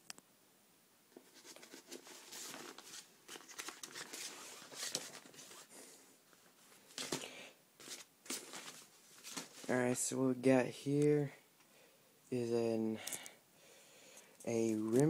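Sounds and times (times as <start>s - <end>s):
rustling and handling noise: 1.1s - 11.7s, 14.1s - 15.0s.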